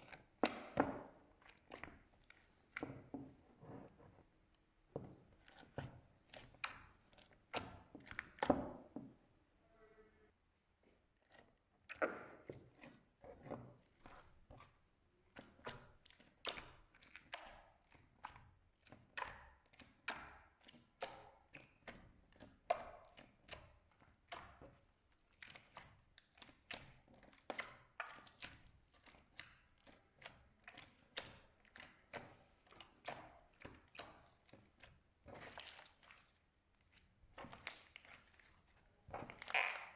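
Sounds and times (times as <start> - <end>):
slime squished by hand: 25.4 - 39.9.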